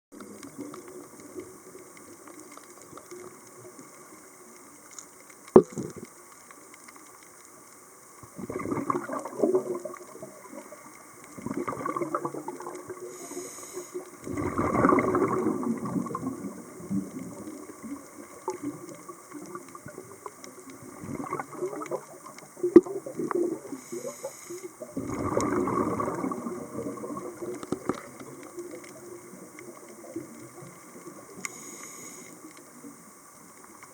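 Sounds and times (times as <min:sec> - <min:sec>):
faint steady hum: 0:00.2 - 0:33.9
air bubbling underwater: 0:08.4 - 0:10.4, 0:11.4 - 0:13.1, 0:14.2 - 0:17.4, 0:20.8 - 0:23.7, 0:25.0 - 0:28.2.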